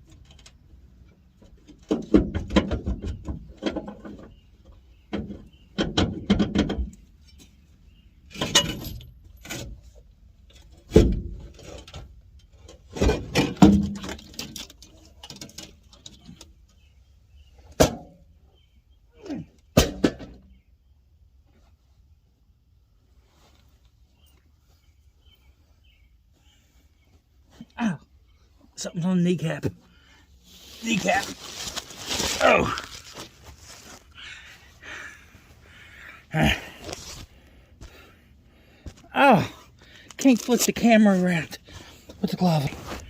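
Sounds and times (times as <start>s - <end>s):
metal clanking and rattling: 8.3s - 16.4s.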